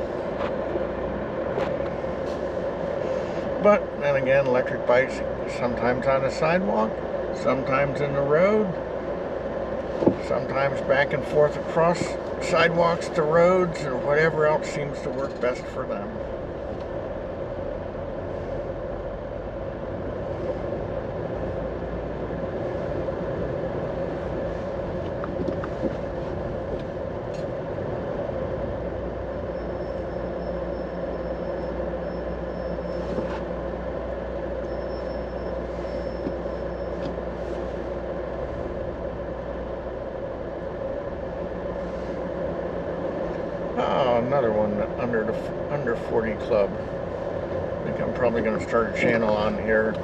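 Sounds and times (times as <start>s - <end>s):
car road noise: 0.0s - 50.0s.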